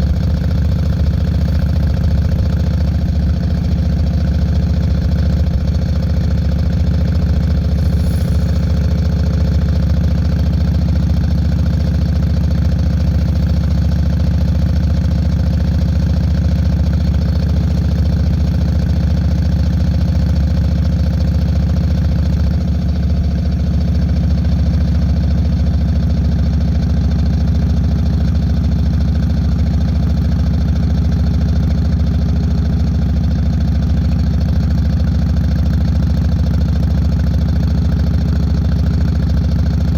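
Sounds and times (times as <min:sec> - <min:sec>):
motorcycle engine running: 0:00.0 - 0:25.3.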